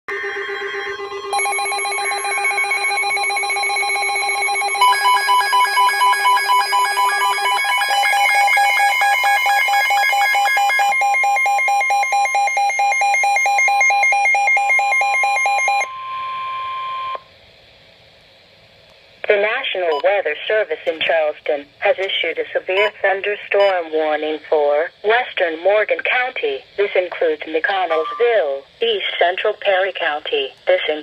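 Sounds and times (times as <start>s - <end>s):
steady alarm tone: 0.1s - 17.3s, 27.9s - 28.5s.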